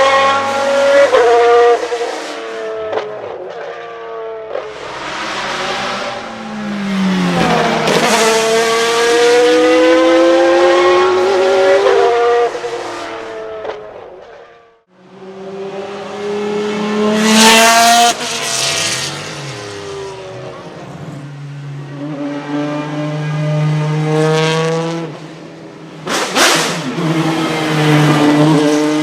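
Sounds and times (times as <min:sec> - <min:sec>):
race car engine accelerating: 0:04.6 - 0:13.4.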